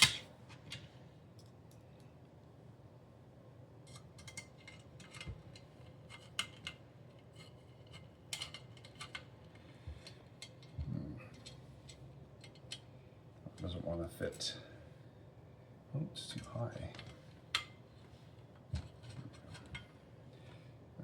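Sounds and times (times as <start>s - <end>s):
small rack parts clicking: 7.9s - 9.3s.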